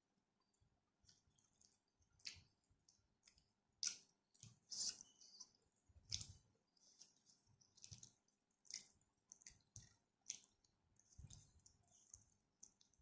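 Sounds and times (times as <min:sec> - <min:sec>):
person chewing food: 0:01.0 - 0:13.0
wet mouth clicks and smacks: 0:01.5 - 0:05.5, 0:06.1 - 0:06.4, 0:07.6 - 0:13.0.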